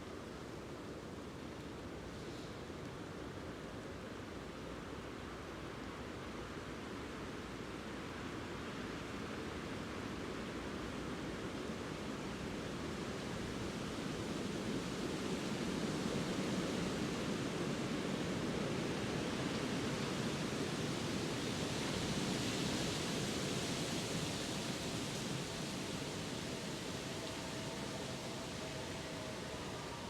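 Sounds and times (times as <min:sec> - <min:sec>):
wind rushing through trees: 0:00.0 - 0:30.0
distant city traffic: 0:23.0 - 0:30.0.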